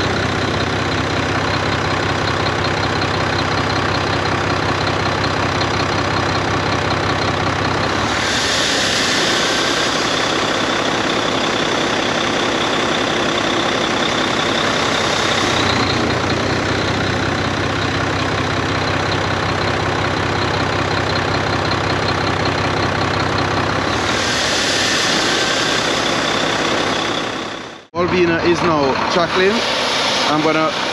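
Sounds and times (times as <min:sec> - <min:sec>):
diesel engine surging: 0:00.0 - 0:30.9
windy rush with high whistle: 0:07.9 - 0:16.3, 0:23.8 - 0:27.8, 0:29.1 - 0:30.9.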